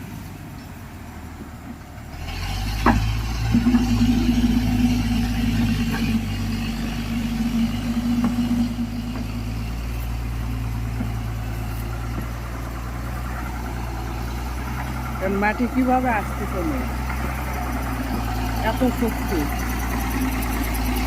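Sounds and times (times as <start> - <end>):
heavy machine engine drone: 0.0 - 21.0
higher steady tone: 3.4 - 21.0.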